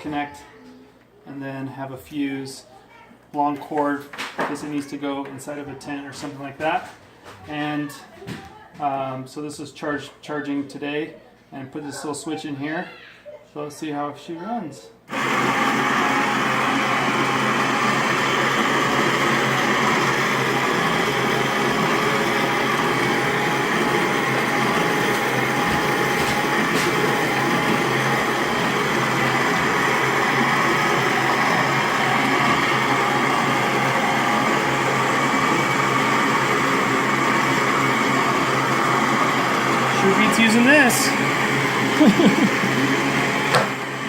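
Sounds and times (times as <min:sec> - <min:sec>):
grain mill motor whirring: 0:15.1 - 0:44.0.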